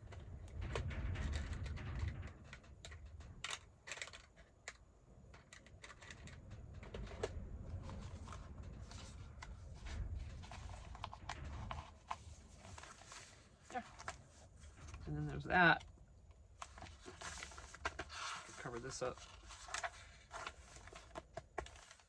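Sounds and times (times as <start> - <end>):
low rumble: 0.0 - 3.9, 4.6 - 18.6
paper rustling: 6.9 - 15.0, 16.6 - 22.0.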